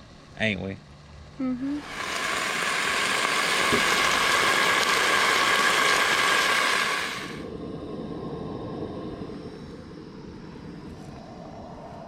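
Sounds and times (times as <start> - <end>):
meat sizzling in a pan: 1.8 - 7.4.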